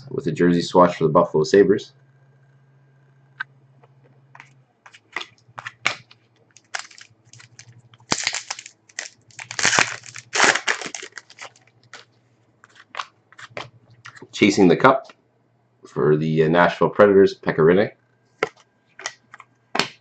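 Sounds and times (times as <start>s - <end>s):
card pack wrapper tearing and crinkling: 6.6s - 12.1s, 12.7s - 13.6s.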